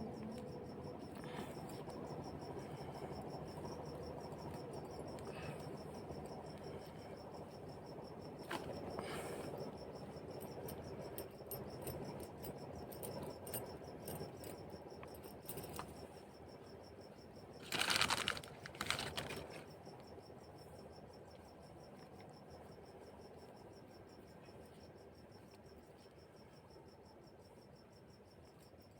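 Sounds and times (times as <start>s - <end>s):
crickets chirping: 0.0s - 28.9s
small objects clicking and tapping: 17.6s - 19.7s.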